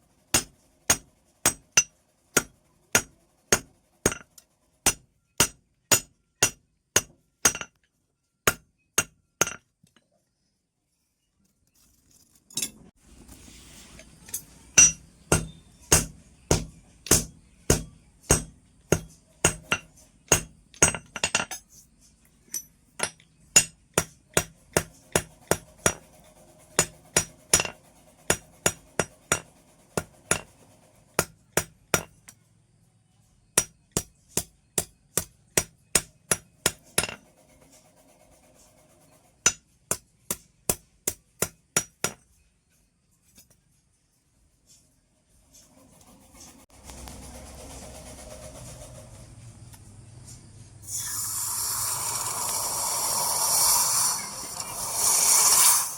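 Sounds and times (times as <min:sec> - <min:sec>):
hammer striking metal on anvil: 0:00.4 - 0:07.8, 0:08.5 - 0:09.7, 0:14.8 - 0:21.6, 0:22.5 - 0:26.0, 0:26.8 - 0:30.5, 0:31.2 - 0:32.3, 0:33.6 - 0:37.2, 0:39.4 - 0:42.3.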